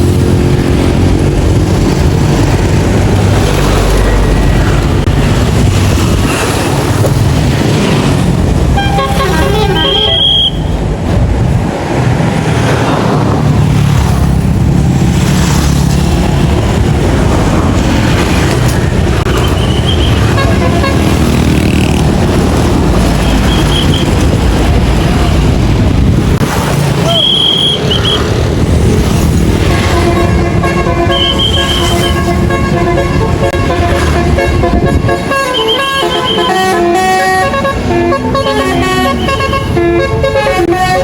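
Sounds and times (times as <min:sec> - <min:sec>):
bus engines and street traffic: 0:00.0 - 0:41.0
multi-tone bus horn: 0:08.7 - 0:10.8, 0:19.5 - 0:22.0, 0:29.5 - 0:41.0.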